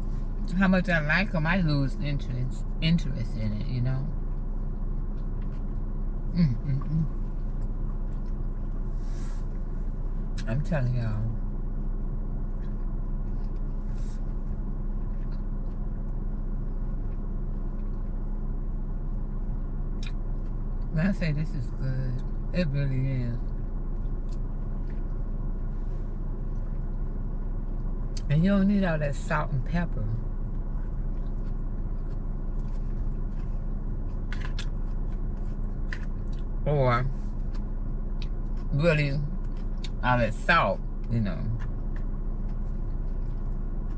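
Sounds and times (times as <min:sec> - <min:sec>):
car engine idling hum: 0:00.0 - 0:43.9
faint eating sounds: 0:00.0 - 0:43.9.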